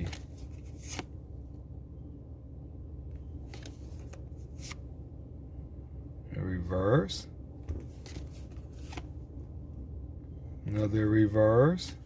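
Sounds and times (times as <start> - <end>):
cards sliding swishes: 0.0 - 1.2, 3.4 - 4.8, 7.8 - 9.1
low steady hum: 0.0 - 12.0.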